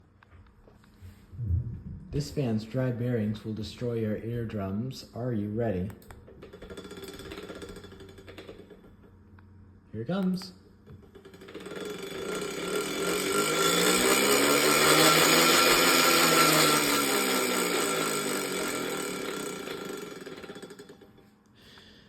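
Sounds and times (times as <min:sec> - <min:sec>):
ceiling fan grinding: 0:06.1 - 0:09.4, 0:10.8 - 0:21.4.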